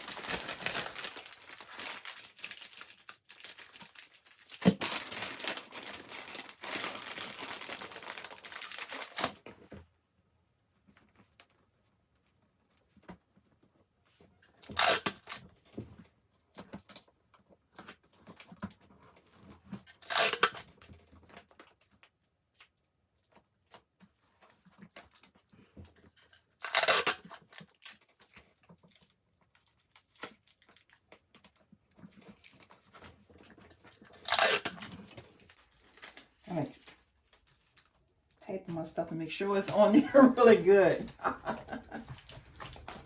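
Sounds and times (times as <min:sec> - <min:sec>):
tape pieces clicking and rustling: 0:00.0 - 0:09.4, 0:14.7 - 0:15.4, 0:20.0 - 0:20.7, 0:26.6 - 0:28.4, 0:33.4 - 0:38.0
tape ripping off roll: 0:00.0 - 0:09.4, 0:14.6 - 0:15.4, 0:20.0 - 0:20.7, 0:26.6 - 0:27.4, 0:34.2 - 0:36.2.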